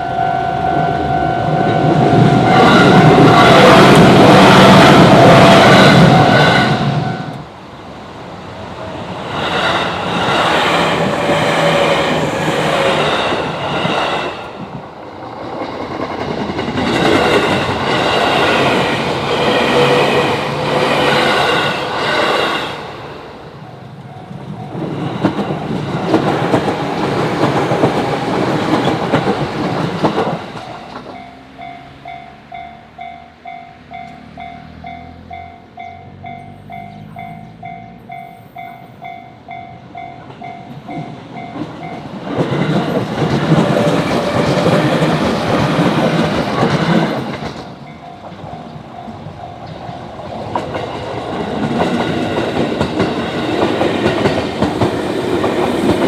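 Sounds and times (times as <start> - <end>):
level crossing warning bell: 0.0 - 7.5, 30.6 - 42.2, 47.8 - 50.3
train wheels clattering over rails: 8.8 - 32.6, 40.1 - 56.0.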